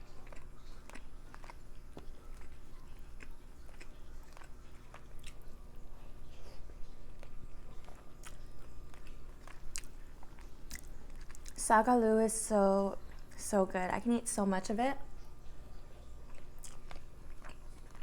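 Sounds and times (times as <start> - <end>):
person chewing food: 0.0 - 11.6, 15.9 - 18.0.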